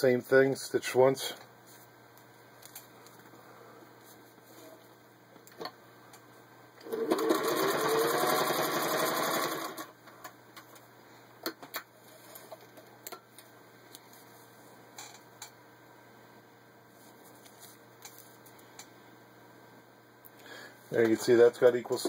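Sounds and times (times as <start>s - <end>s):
sewing machine stitching: 6.8s - 9.9s.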